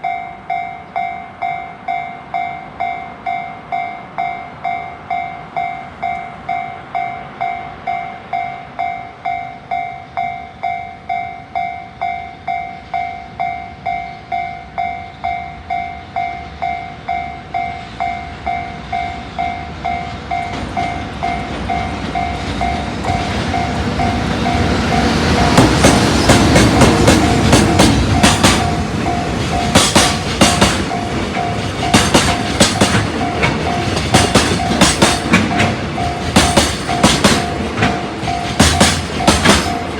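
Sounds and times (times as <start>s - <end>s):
train wheels clattering on rails: 15.7s - 39.9s.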